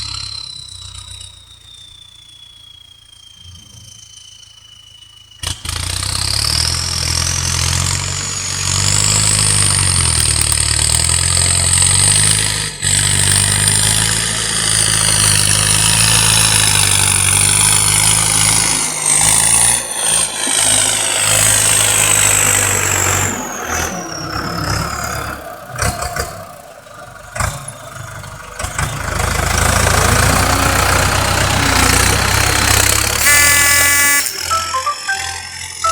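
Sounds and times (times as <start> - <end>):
turbo whistle: 0.0 - 5.6, 31.8 - 35.9
tractor engine revving: 5.1 - 35.9.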